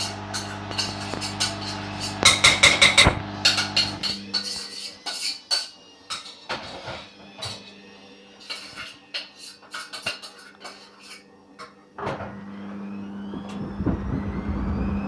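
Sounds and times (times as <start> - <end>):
washing machine motor hum: 0.0 - 4.5, 12.0 - 15.0
washing machine drum knocking: 2.2 - 3.8.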